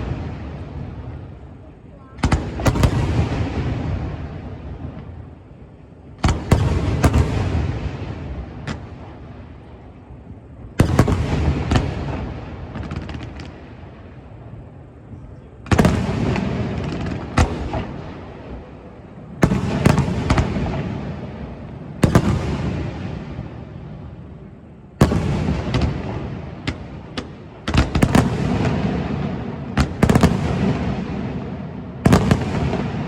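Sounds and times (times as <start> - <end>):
firework shells booming: 2.2 - 5.2, 6.2 - 14.0, 15.1 - 33.0
light firework pops: 8.6 - 9.1, 10.3 - 13.6, 25.0 - 29.0, 29.7 - 31.1, 32.0 - 33.0.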